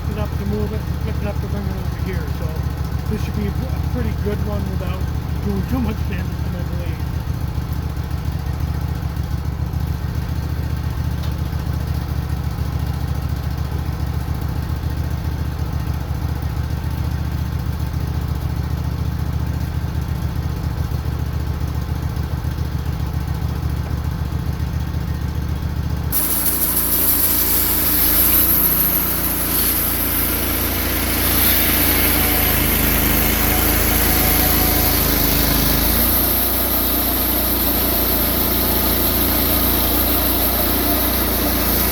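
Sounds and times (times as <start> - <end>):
sawmill running: 0.0 - 41.9
band blade cutting log: 26.1 - 41.9.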